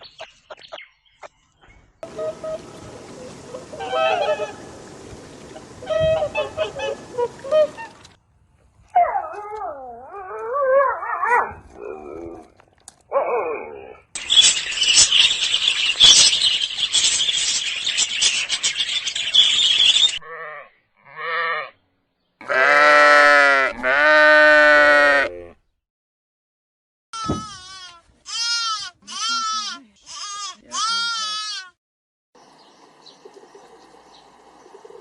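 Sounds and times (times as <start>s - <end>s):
wavering animal call: 3.4s - 4.6s
animal bleats: 20.2s - 21.8s, 22.4s - 25.6s, 27.2s - 31.8s.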